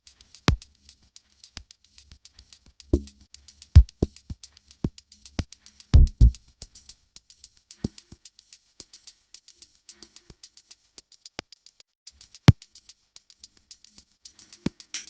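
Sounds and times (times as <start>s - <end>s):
hi-hat ticks: 0.0s - 15.0s
deep kick drums: 3.8s - 4.1s, 6.0s - 6.4s.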